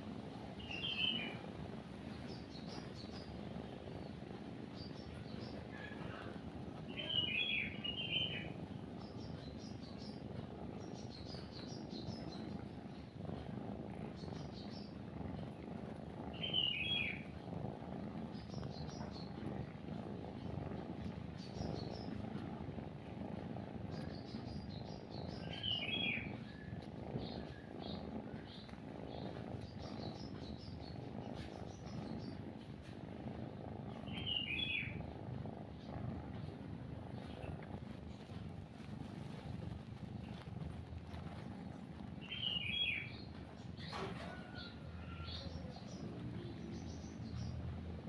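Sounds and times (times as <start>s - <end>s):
kitten purring: 0.0s - 48.0s
faint high bird chirps: 0.6s - 1.4s, 6.9s - 8.5s, 16.4s - 17.2s, 24.1s - 26.6s, 34.0s - 35.0s, 42.2s - 47.6s
bird calling: 16.4s - 17.2s, 25.4s - 26.3s, 34.1s - 35.0s, 42.3s - 43.2s.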